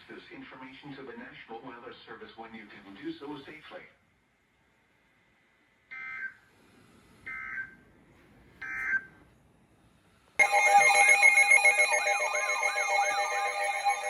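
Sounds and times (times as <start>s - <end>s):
layered warbling alarm tone: 10.4s - 14.0s
warbling data tone bursts: 10.4s - 14.0s.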